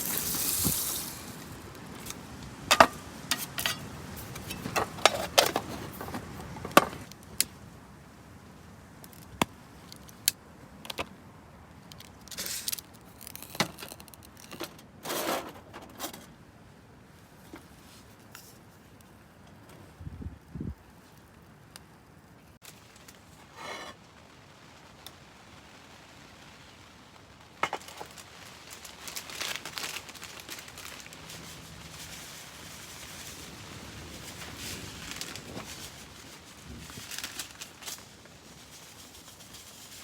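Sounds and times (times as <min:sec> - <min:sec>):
small hard objects clinking: 0:00.0 - 0:07.1, 0:11.9 - 0:14.8, 0:27.6 - 0:40.0.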